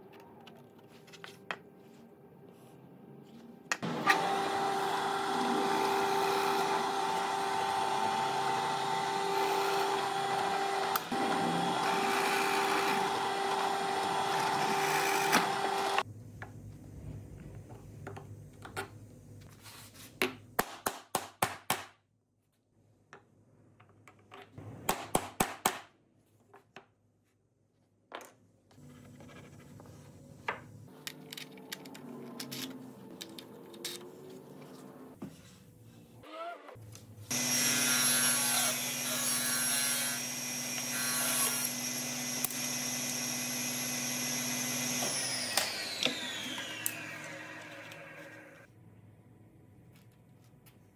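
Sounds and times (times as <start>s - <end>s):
power tool cutting wood: 3.8s - 16.0s, 37.3s - 48.7s.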